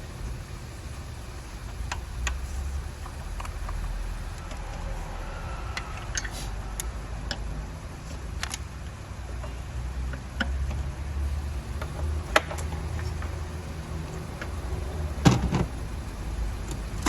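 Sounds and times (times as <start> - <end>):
steady low rumble: 0.0 - 4.4, 11.2 - 17.0.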